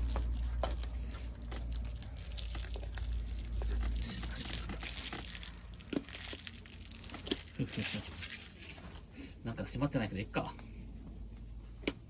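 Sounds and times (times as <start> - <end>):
plastic packaging crinkling: 0.0 - 8.9
low steady rumble: 0.0 - 12.0.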